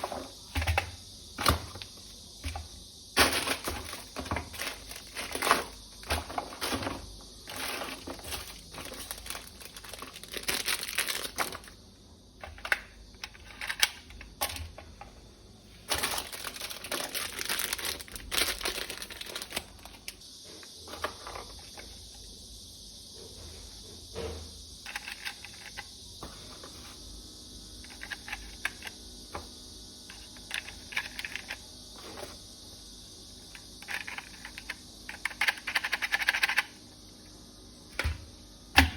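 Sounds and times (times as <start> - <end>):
plastic packaging crinkling: 3.2 - 11.8, 15.9 - 20.2
plastic toy parts clicking: 12.4 - 14.7, 33.8 - 36.8.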